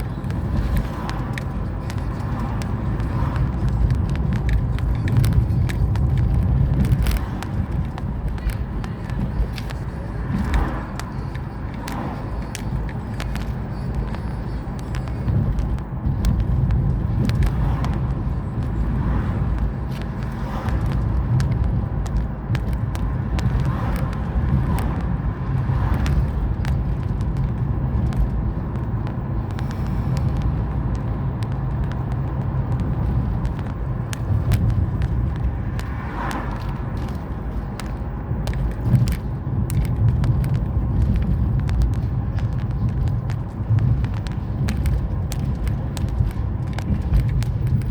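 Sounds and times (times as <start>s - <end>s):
car engine and road noise: 0.0s - 47.9s
small clicks and knocks: 0.0s - 47.9s.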